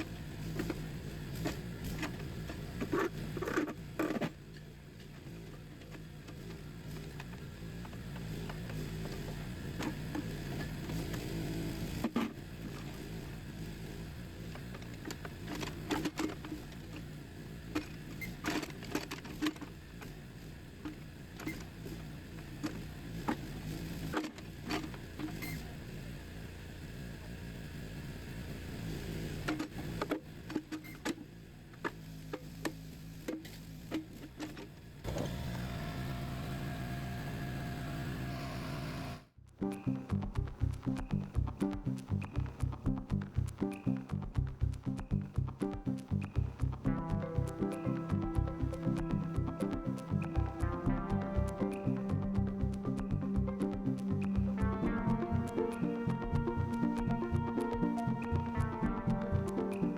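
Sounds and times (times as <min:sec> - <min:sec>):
small engine running: 0:00.0 - 0:39.3
music: 0:14.7 - 0:16.8, 0:39.4 - 0:59.9.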